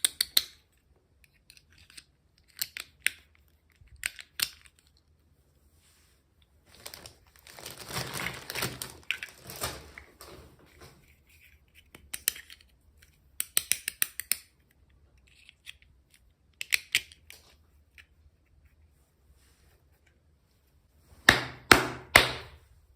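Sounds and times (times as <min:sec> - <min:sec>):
packaging rustling: 0:06.7 - 0:11.3.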